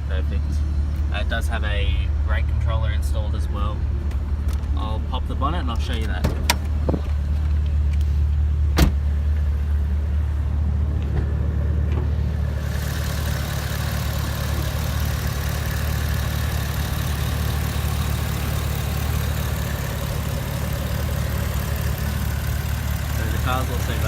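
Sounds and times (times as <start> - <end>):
car engine idling: 0.0 - 24.0.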